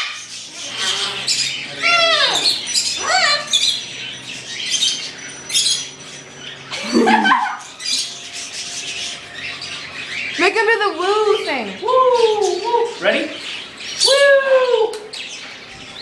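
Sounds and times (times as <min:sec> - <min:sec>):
cockatoo squawking: 0:00.0 - 0:03.8.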